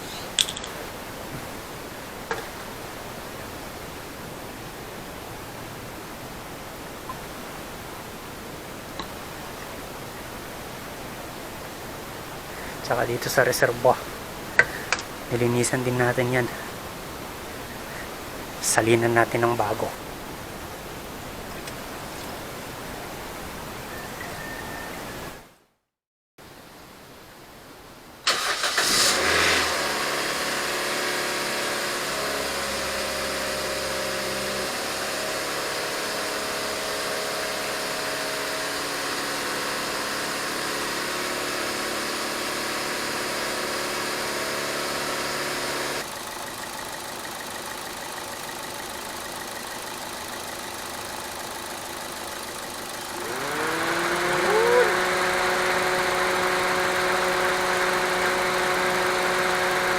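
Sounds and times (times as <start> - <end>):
car engine starting and idling: 12.0 - 20.0, 28.3 - 59.9.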